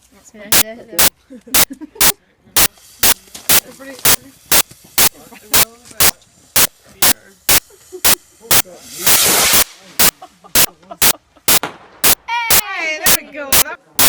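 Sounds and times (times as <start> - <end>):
firework hissing burst: 0.6 - 14.0
firework cake bangs: 8.6 - 10.2, 11.5 - 12.2.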